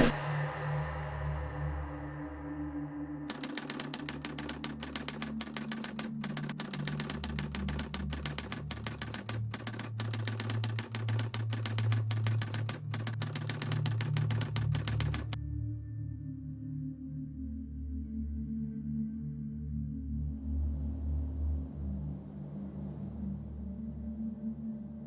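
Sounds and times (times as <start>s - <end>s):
fast typewriter-like clicks: 3.3s - 15.4s.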